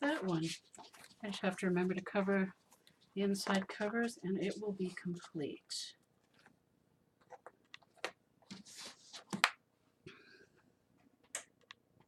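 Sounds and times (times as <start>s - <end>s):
paper rustling: 0.0s - 5.6s, 7.3s - 9.6s.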